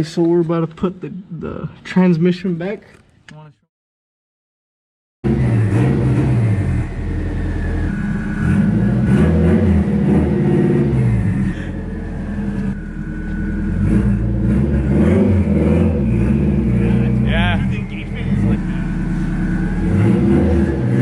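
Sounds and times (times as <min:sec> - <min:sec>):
car engine revving: 0:05.2 - 0:21.0.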